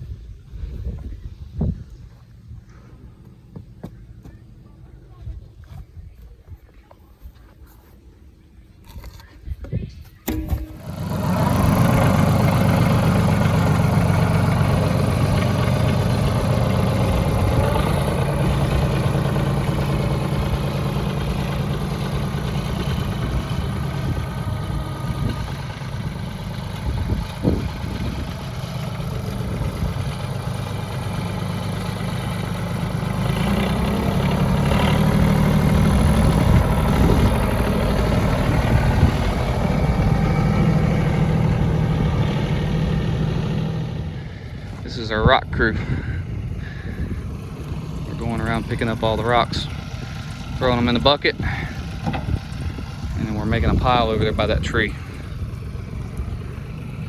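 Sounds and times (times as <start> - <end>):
engine running low: 0.0 - 57.0.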